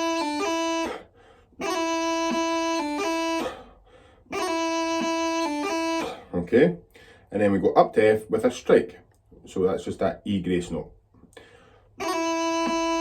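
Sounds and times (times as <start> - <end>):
bagpipe chanter playing: 0.0 - 6.3, 12.0 - 13.0.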